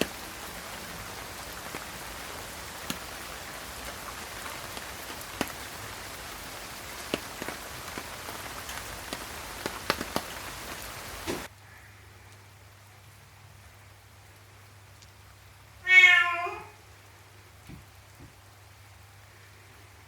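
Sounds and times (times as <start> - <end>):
heavier raindrops tapping: 0.0 - 11.6, 16.9 - 18.8
steady rain: 0.0 - 20.0.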